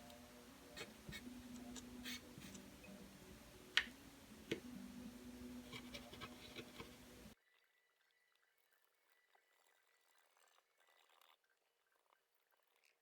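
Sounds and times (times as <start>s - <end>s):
faint low hum: 0.0s - 11.0s
scratching on circuit board: 0.7s - 3.0s, 5.6s - 7.2s, 8.7s - 13.0s.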